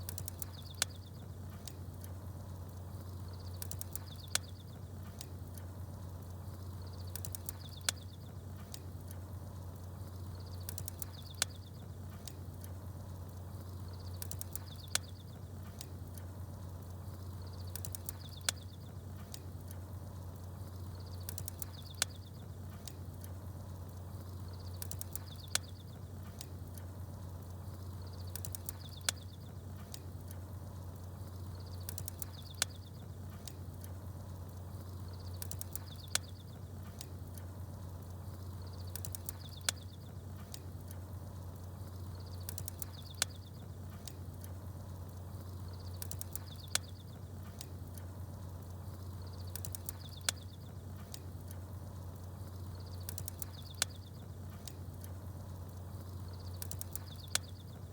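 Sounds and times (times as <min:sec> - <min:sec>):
fire crackling pop: 0:00.0 - 0:57.9
low fire rumble: 0:00.0 - 0:57.9
bird chirps: 0:00.4 - 0:01.2, 0:38.6 - 0:40.1, 0:42.1 - 0:43.6, 0:49.1 - 0:50.7, 0:52.6 - 0:54.3, 0:56.1 - 0:57.8.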